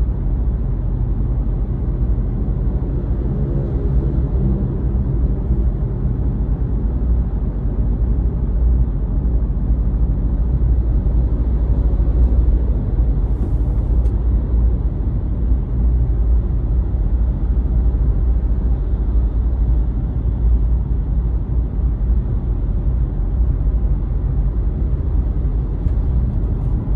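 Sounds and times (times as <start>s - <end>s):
car interior engine and road noise: 0.0s - 26.9s.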